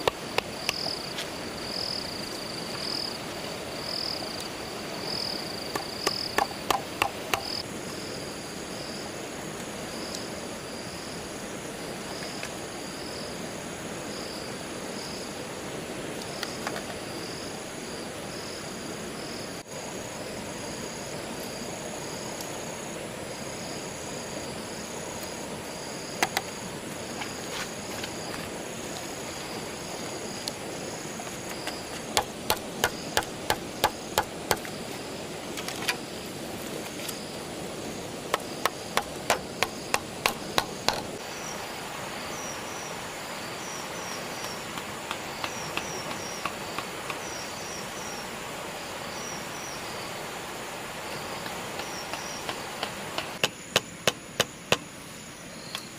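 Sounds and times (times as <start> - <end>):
insect chirring: 0.0 - 9.2, 16.2 - 55.9
tool knocking on bamboo: 5.7 - 7.6, 32.1 - 34.7, 38.3 - 41.1, 44.8 - 47.2, 51.8 - 54.8.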